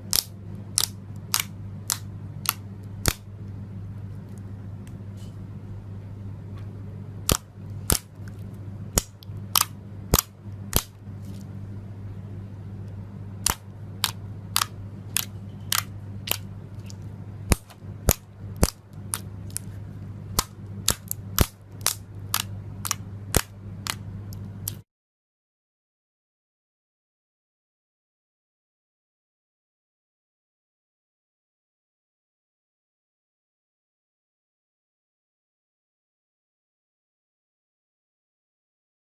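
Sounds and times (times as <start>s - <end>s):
steady low hum: 0.0s - 24.8s.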